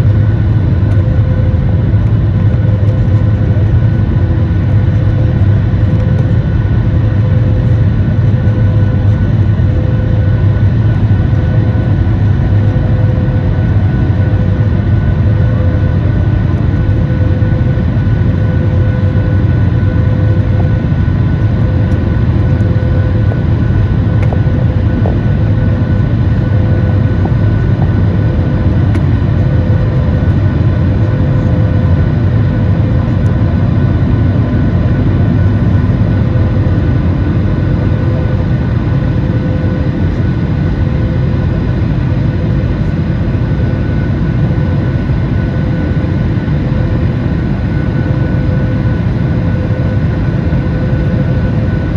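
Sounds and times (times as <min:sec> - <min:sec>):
jet engines roaring at takeoff: 0:00.0 - 0:51.9.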